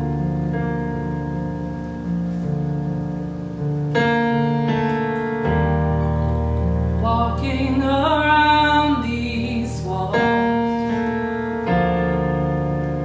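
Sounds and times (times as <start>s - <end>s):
sustained keyboard chords: 0.0s - 13.0s
person singing: 7.0s - 11.8s.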